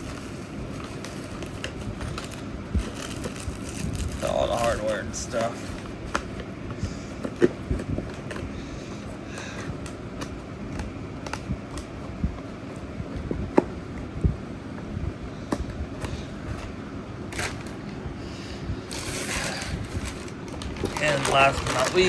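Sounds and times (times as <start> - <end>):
packaging rustling: 0.0 - 12.0, 18.9 - 22.0.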